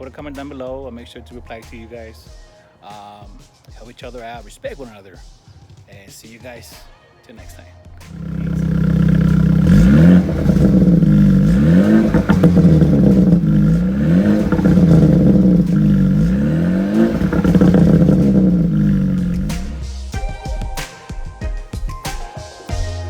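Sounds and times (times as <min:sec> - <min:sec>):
car engine revving: 0:08.0 - 0:20.2.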